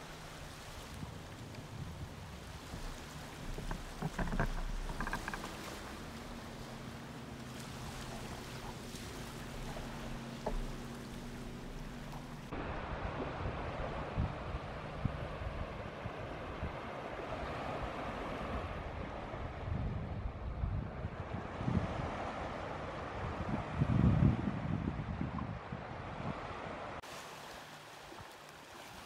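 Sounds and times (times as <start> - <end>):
wind noise on microphone: 0.0 - 6.8, 7.6 - 27.0
water splashes: 0.0 - 18.7, 27.0 - 29.0.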